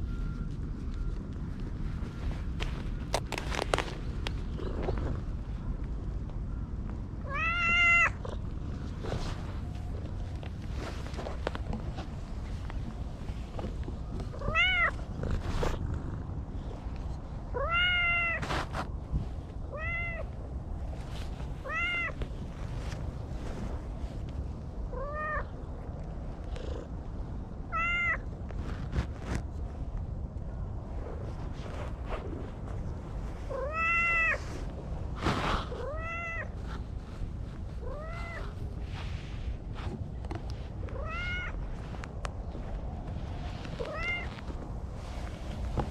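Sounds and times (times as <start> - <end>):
cat meowing: 7.2 - 8.2, 14.4 - 15.0, 17.6 - 18.4, 21.6 - 22.2, 33.5 - 34.4, 35.8 - 36.5, 40.9 - 41.6, 43.8 - 44.3
brief rustle: 18.4 - 19.3.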